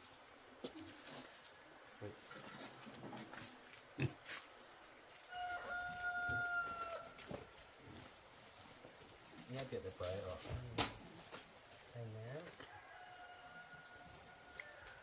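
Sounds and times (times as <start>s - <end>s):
crickets droning: 0.0s - 15.0s
rooster crowing: 5.2s - 7.2s, 12.5s - 15.0s.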